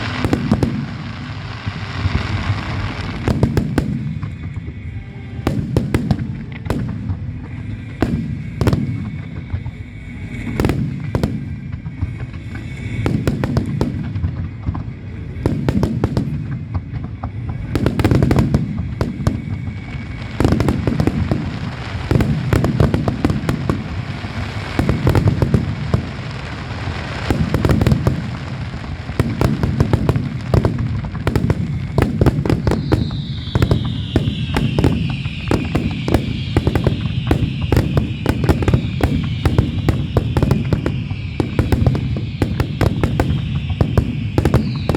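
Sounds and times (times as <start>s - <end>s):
fireworks booming and crackling: 0.0s - 44.9s
falling whistling tone: 29.3s - 44.9s.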